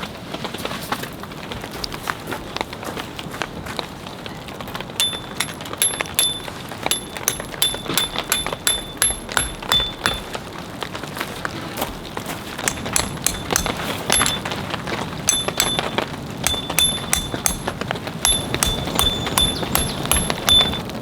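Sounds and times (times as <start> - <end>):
rain pattering on shelter: 0.0 - 5.0
drops giving high ring: 5.0 - 10.4, 12.6 - 14.6, 15.3 - 20.8.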